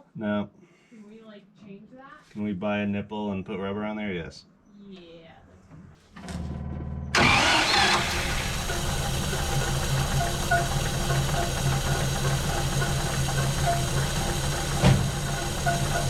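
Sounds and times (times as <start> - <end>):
car engine idling: 7.1 - 16.0
engine sharp knock: 7.4 - 16.0.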